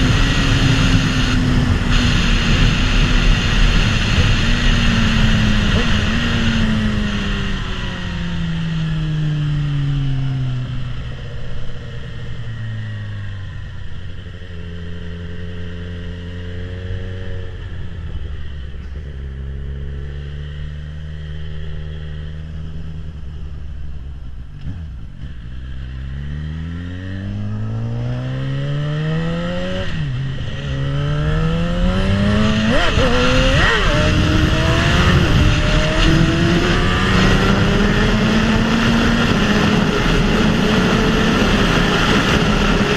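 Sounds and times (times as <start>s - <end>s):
motorcycle engine revving: 0.0s - 42.9s.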